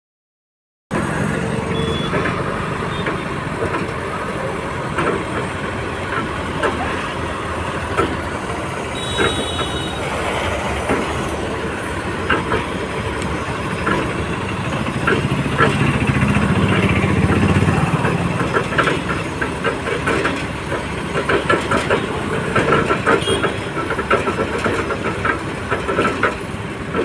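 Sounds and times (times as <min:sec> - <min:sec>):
heavy machinery engine running: 0:00.9 - 0:27.0
brief high tone: 0:01.6 - 0:02.2
metallic clanks and knocks: 0:12.0 - 0:27.0.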